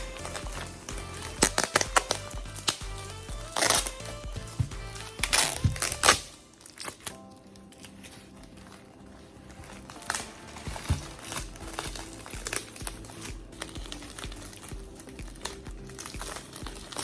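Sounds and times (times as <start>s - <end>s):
background music: 0.0s - 17.0s.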